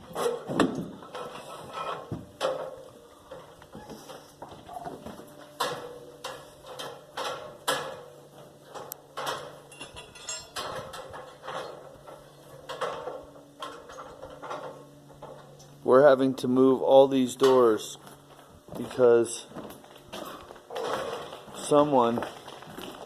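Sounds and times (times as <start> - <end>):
faint steady hum: 0.0 - 23.0
hand tool knocks and clanks: 8.7 - 15.7.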